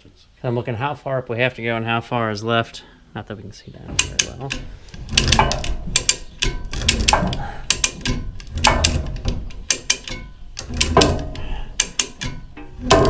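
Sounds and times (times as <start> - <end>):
ratchet mechanism clicking: 4.0 - 13.0.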